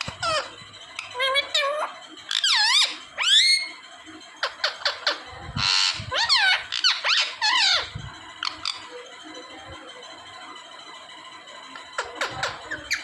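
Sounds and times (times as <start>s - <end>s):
parrot whistled squeaks: 0.0s - 3.8s, 4.4s - 8.9s, 12.0s - 13.0s
parrot screech: 4.6s - 7.9s.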